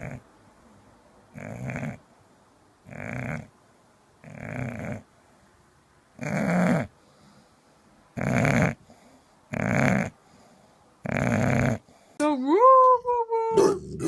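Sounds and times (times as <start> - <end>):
dog grunting and growling: 0.0 - 0.2, 1.3 - 2.0, 2.9 - 3.5, 4.2 - 5.0, 6.2 - 6.9, 8.2 - 8.9, 9.5 - 10.2, 11.0 - 11.9, 13.5 - 14.0.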